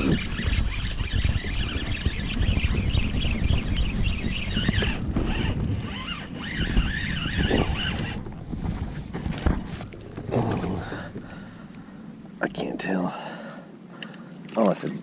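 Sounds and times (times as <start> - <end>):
wind buffeting microphone: 0.0 - 11.9.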